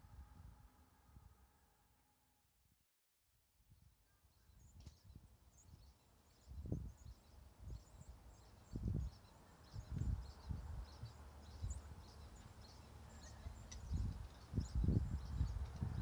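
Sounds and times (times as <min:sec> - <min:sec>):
small birds chirping: 0:04.1 - 0:16.0.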